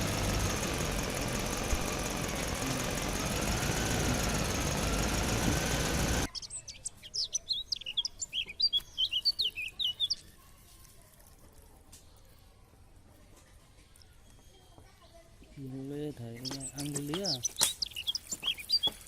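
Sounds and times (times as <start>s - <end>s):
engine-like mechanical noise: 0.0s - 6.7s
birds chirping rapidly: 0.0s - 10.3s, 15.5s - 19.0s.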